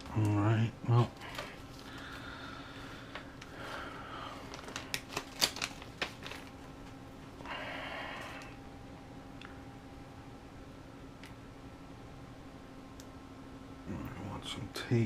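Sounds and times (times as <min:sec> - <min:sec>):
plastic parts rustling and sliding: 0:04.4 - 0:07.0.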